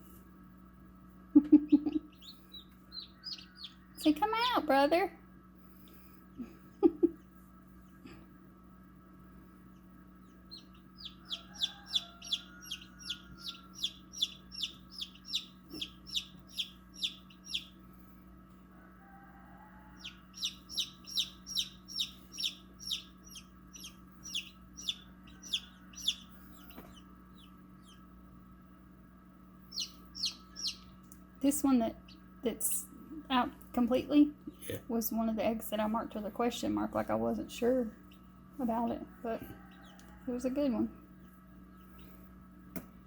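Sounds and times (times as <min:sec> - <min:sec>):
steady low hum: 0:00.0 - 0:43.0
chicks peeping: 0:01.5 - 0:04.6, 0:09.7 - 0:17.8, 0:19.8 - 0:28.2, 0:29.7 - 0:31.3, 0:38.0 - 0:42.2.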